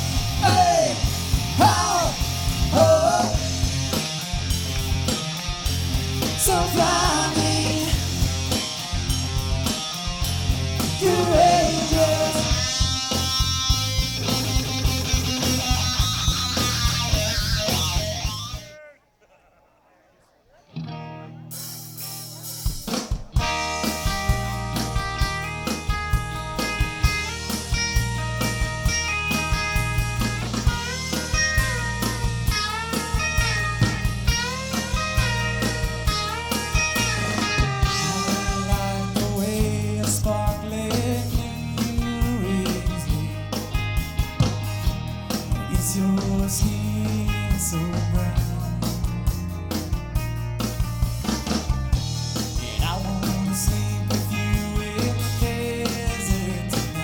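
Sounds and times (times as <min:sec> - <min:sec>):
live rock band playing: 0:00.0 - 0:18.8, 0:20.8 - 0:57.0
lead guitar bending notes: 0:03.4 - 0:18.8, 0:23.4 - 0:39.6.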